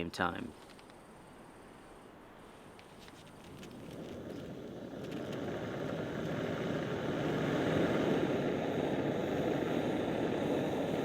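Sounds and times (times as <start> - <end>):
gas stove burner hissing: 4.4 - 11.0.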